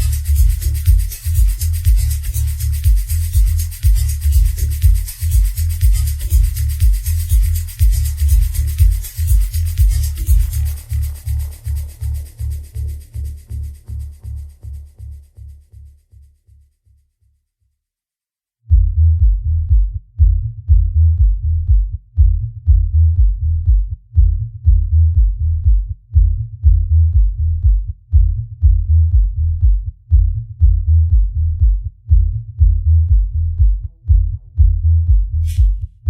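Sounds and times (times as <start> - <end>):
bass-heavy electronic music: 0.0 - 16.5, 18.7 - 36.0.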